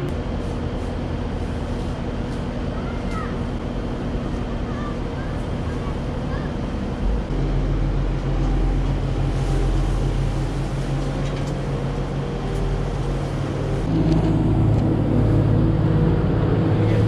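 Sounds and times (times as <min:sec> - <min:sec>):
engine running and revving: 0:05.4 - 0:17.0.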